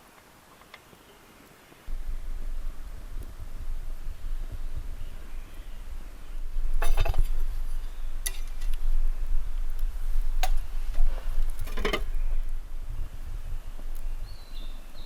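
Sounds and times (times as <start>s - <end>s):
steady low rumble: 1.9s - 15.0s
tableware clinking: 6.8s - 7.4s, 11.6s - 12.2s.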